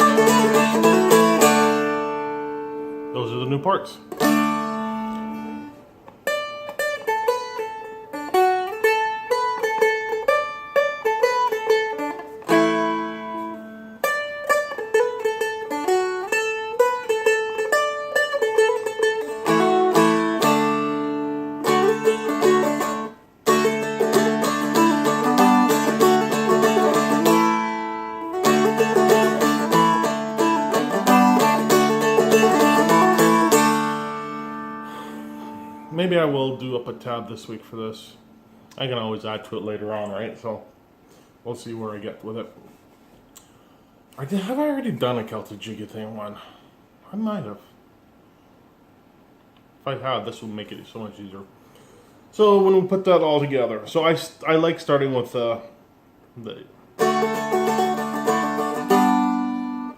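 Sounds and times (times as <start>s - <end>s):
flatpicked string instrument jig: 0.0s - 3.5s, 4.1s - 37.0s, 57.0s - 59.9s.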